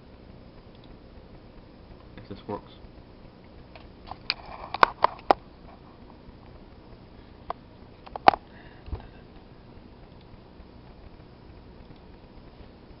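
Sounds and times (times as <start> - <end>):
computer mouse clicking: 0.7 - 0.9.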